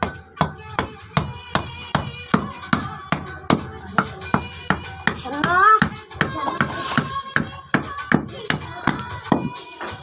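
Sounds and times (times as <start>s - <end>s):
steady percussion beat: 0.0s - 9.6s.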